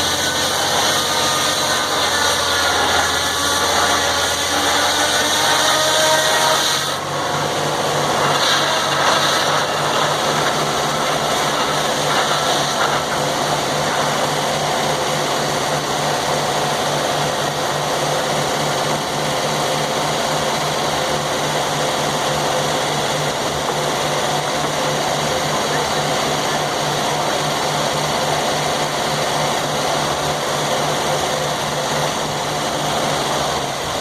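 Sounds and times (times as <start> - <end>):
sawmill engine running: 0.0 - 34.0.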